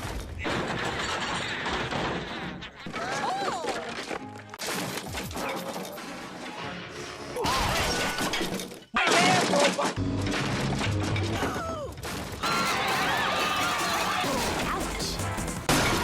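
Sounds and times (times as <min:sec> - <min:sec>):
wood splintering crash: 0:12.0 - 0:16.0.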